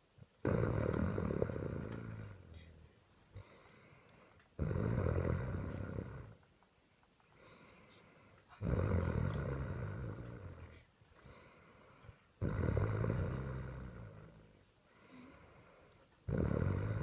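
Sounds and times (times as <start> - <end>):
person snoring: 0.4 - 2.7, 4.6 - 6.4, 8.6 - 11.6, 12.4 - 15.6, 16.3 - 17.0.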